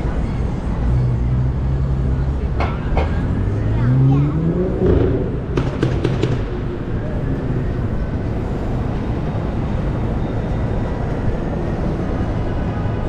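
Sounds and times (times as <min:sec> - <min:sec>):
traffic rumble: 0:00.0 - 0:13.0.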